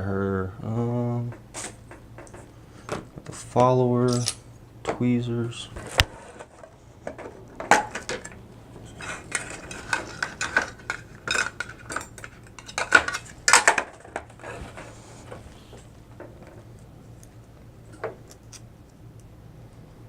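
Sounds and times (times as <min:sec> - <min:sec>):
metal lock parts clinking: 0:04.0 - 0:04.4, 0:09.0 - 0:14.4.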